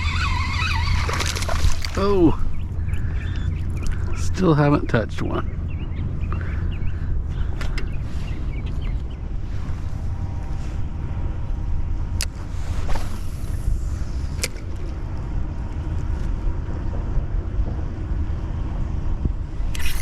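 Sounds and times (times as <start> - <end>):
wind buffeting microphone: 0.0 - 20.0.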